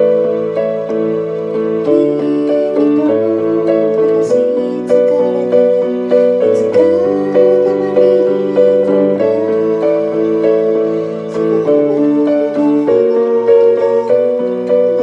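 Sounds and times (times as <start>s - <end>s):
keyboard piano chords: 0.0s - 15.0s.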